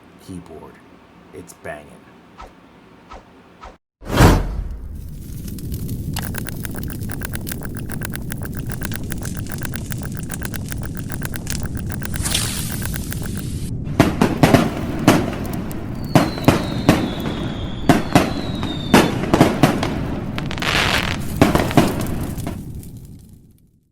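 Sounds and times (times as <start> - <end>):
crackling firework burst: 13.4 - 23.5
fireworks bangs: 13.9 - 22.8
falling firework whistle: 15.8 - 22.2.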